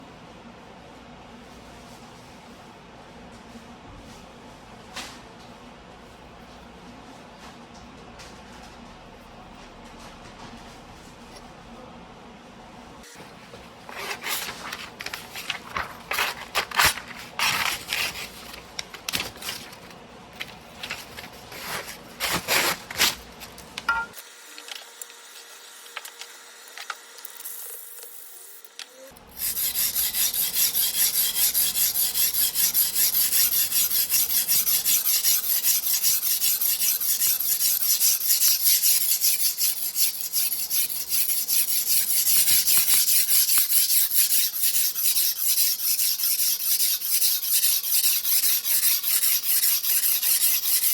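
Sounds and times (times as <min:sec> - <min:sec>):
knife scraping on whetstone: 0:29.3 - 0:50.9
steel strokes on whetstone: 0:29.3 - 0:50.9.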